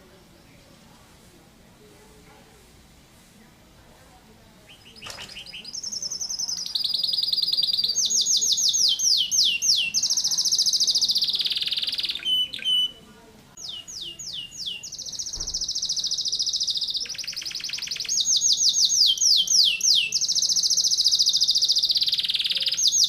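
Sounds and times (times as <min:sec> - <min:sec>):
canary singing trills: 0:04.6 - 0:23.0.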